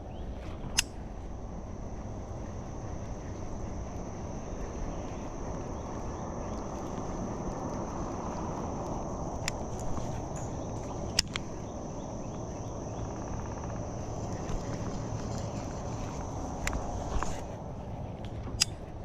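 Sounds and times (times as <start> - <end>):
high insect drone: 0.0 - 19.0
sharp click: 18.2 - 18.8.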